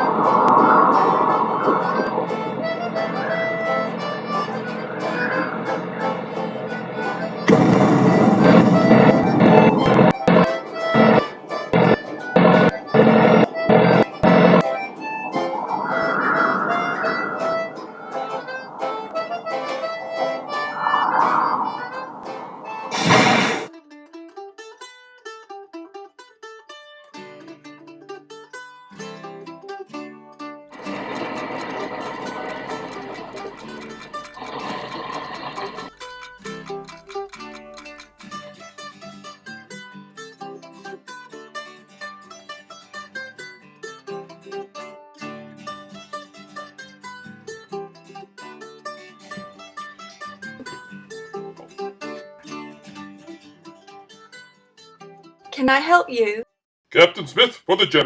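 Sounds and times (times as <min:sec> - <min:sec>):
low sustained chords: 0:00.0 - 0:23.2
plucked-string melody: 0:00.0 - 0:56.4.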